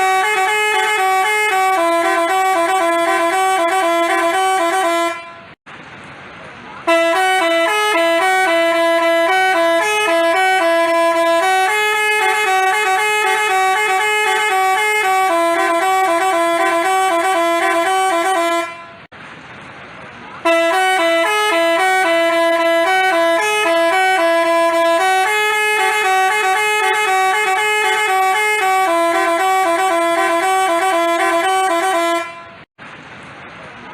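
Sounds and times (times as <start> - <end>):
multi-note bus horn tune: 0.0 - 5.6, 6.8 - 19.1, 20.4 - 32.7.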